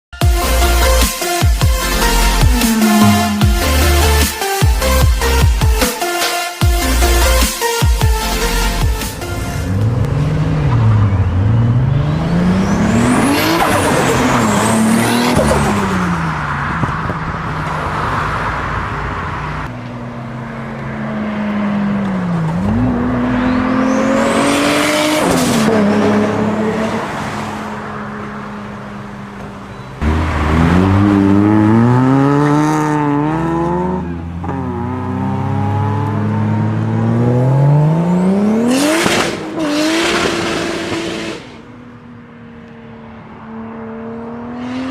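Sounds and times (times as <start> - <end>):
car engine revving hard: 2.0 - 4.4, 9.7 - 16.1, 30.0 - 41.7.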